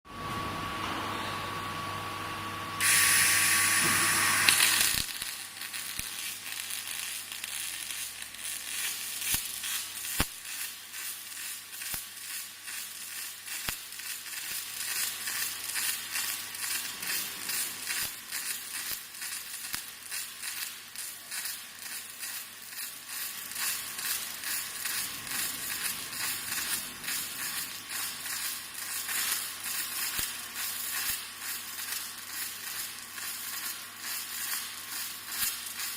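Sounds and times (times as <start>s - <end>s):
loud hiss: 2.8s - 5.9s
welding arc crackling: 2.8s - 35.9s.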